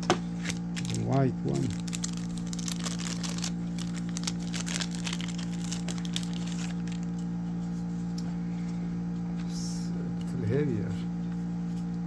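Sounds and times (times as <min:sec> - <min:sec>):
steady electrical hum: 0:00.0 - 0:12.0
packaging crackling and clicking: 0:00.4 - 0:07.2.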